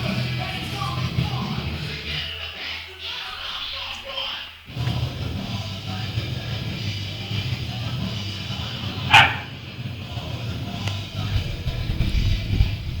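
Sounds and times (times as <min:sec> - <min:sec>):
dog bark: 0:09.0 - 0:09.6.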